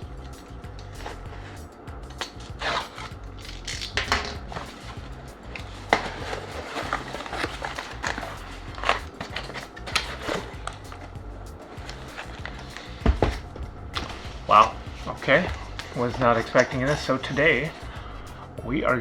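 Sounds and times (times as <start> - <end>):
background music with steady beat: 0.0 - 19.0
cardboard box being cut open: 2.2 - 11.1.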